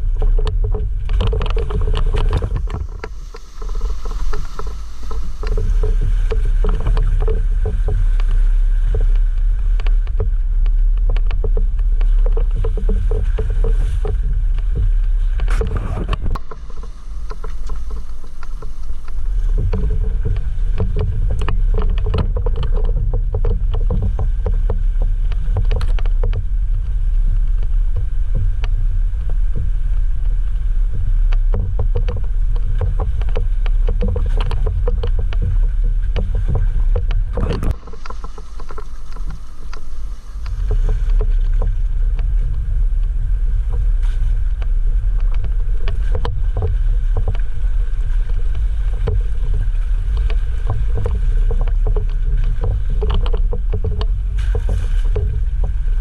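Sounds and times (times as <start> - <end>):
knocks and rattles: 0.0 - 8.2, 9.8 - 26.5, 30.9 - 42.6, 48.3 - 56.0
vehicle driving off-road rumble: 0.0 - 56.0.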